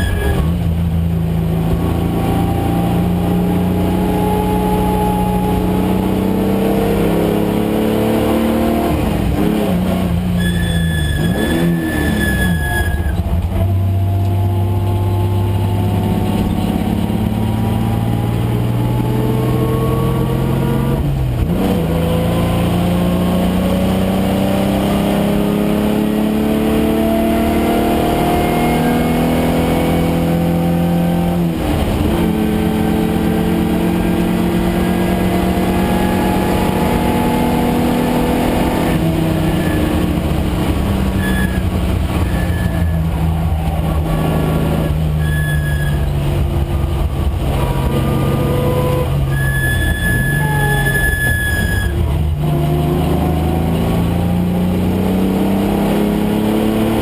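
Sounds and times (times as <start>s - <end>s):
race car engine pulling under load: 23.3s - 57.0s.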